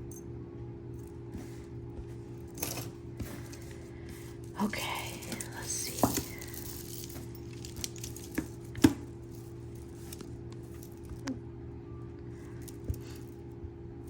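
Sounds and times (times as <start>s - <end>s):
steady low hum: 0.0s - 14.0s
jewelry pieces clinking: 2.4s - 11.2s.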